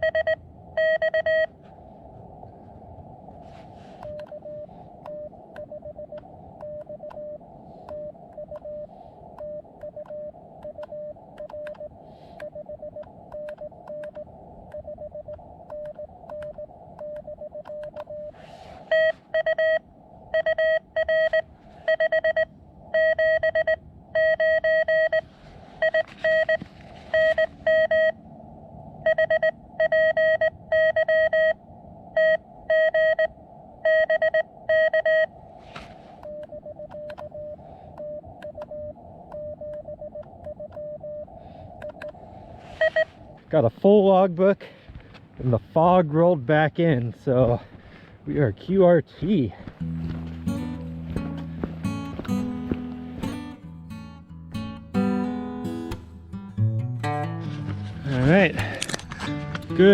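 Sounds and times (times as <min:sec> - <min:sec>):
morse code beeping tone: 0:00.0 - 0:01.6, 0:14.8 - 0:19.8, 0:20.4 - 0:28.2, 0:29.1 - 0:31.6, 0:32.2 - 0:35.3, 0:42.8 - 0:43.1, 0:49.8 - 0:59.9
radio receiver hiss: 0:18.0 - 0:19.4.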